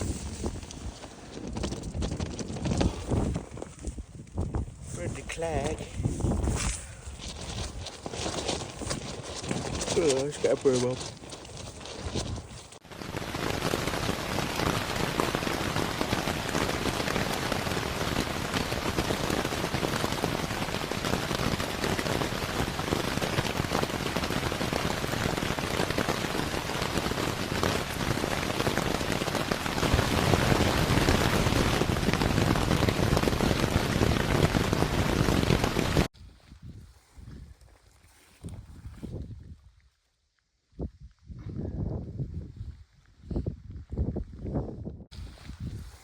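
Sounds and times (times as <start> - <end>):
heavy rain on a tent: 0.0 - 3.7, 7.2 - 36.1.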